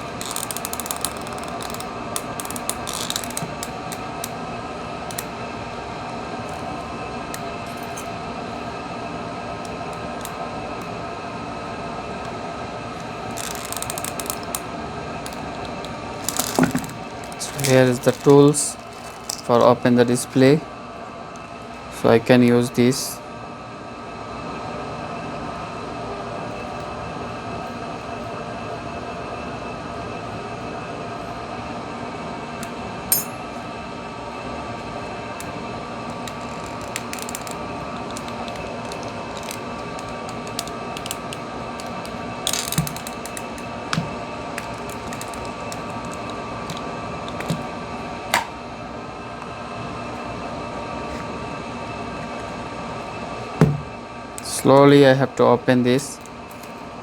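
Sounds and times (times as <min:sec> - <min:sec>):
small clicks and scrapes of tools: 0:00.0 - 0:04.0, 0:13.3 - 0:14.6, 0:36.2 - 0:47.6.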